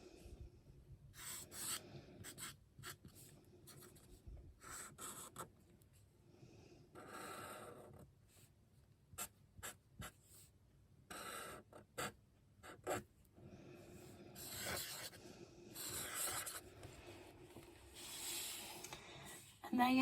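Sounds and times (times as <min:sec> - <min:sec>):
paintbrush brushing on paper: 0:17.9 - 0:19.5.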